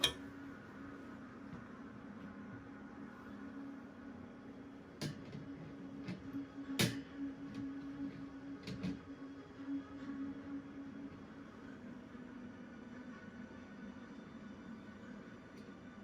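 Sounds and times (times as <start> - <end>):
fan motor humming: 0.0 - 1.6
clicks and knocks from handling fan: 5.0 - 7.7.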